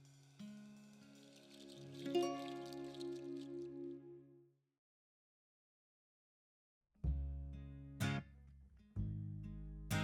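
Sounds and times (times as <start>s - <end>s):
faint music of held notes: 0.4s - 4.4s.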